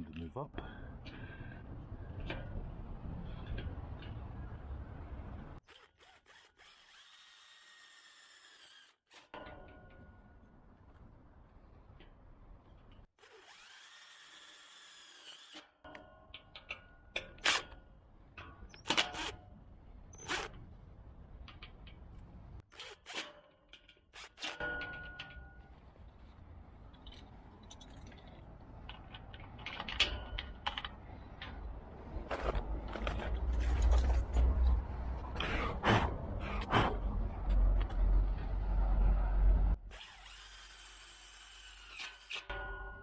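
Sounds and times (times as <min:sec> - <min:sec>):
power drill running: 0:05.7 - 0:08.9, 0:13.2 - 0:15.6, 0:39.9 - 0:42.4.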